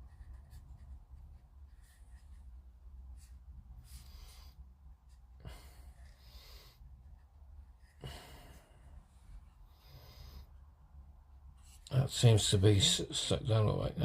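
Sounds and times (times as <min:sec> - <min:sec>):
person breathing faintly: 0:03.2 - 0:11.0.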